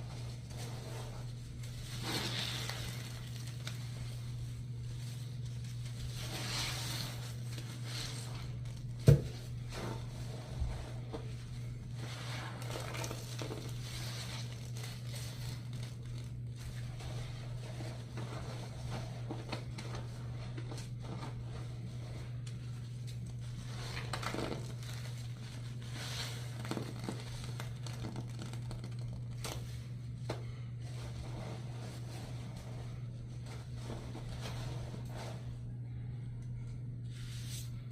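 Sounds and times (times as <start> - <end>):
wet sponge squishing: 0.0 - 35.8
steady low hum: 0.0 - 37.9.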